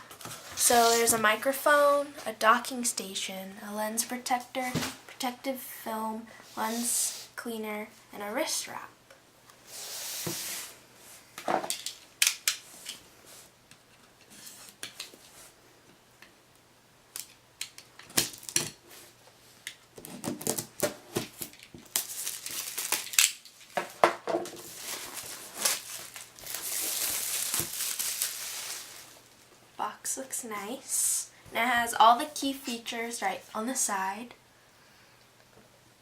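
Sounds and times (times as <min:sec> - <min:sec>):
packaging rustling: 0:20.2 - 0:29.5.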